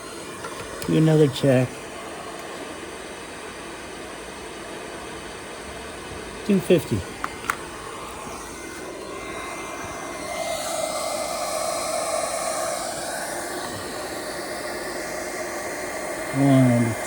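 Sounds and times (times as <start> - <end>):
cooling fan whirring: 0.0 - 17.0.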